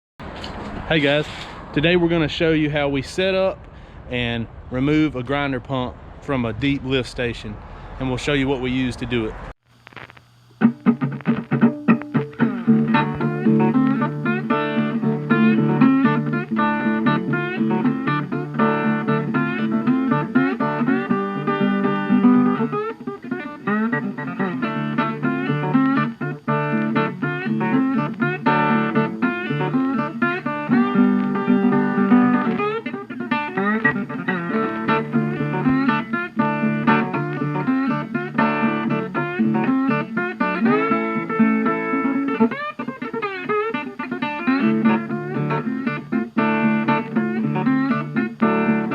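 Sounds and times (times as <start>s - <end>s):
plucked bluesy guitar: 10.5s - 48.9s.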